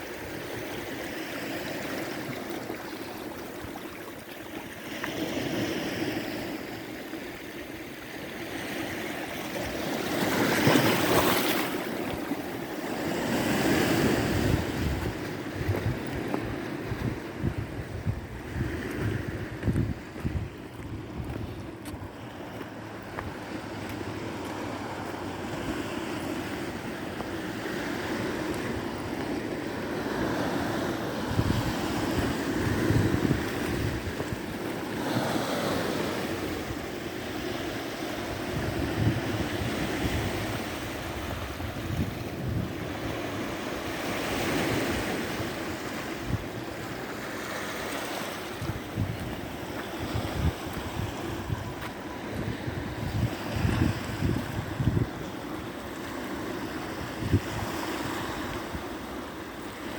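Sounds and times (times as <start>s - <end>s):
sea waves breaking on shore: 0.0s - 59.9s
wind buffeting microphone: 9.5s - 37.0s, 37.7s - 47.2s, 48.4s - 59.3s.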